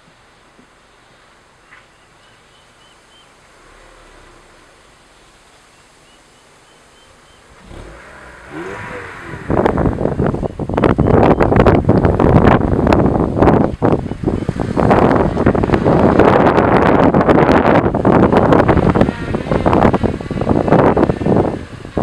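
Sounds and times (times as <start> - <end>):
faint high chirps: 1.6 - 3.4, 5.6 - 7.5, 10.4 - 11.6
car engine revving: 3.5 - 5.6, 6.8 - 22.0
wind buffeting microphone: 7.1 - 22.0.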